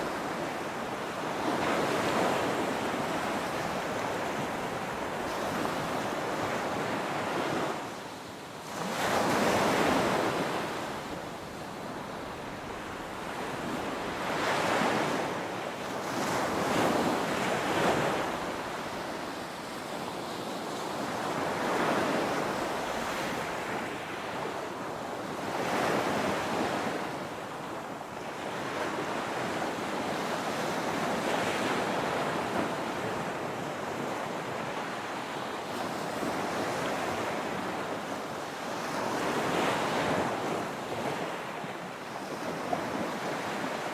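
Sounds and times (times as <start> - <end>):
ocean waves breaking on beach: 0.0 - 43.9.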